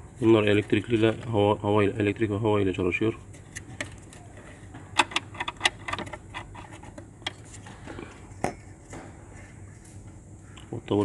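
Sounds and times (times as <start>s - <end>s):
hands clicking and tapping parts: 3.3s - 7.7s.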